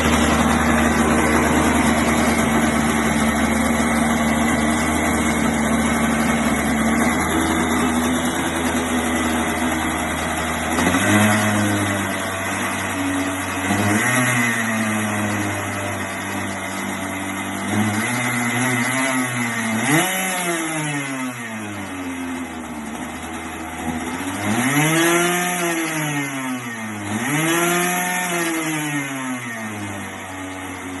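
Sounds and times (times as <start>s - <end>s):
go-kart engine idling and revving: 0.0s - 31.0s.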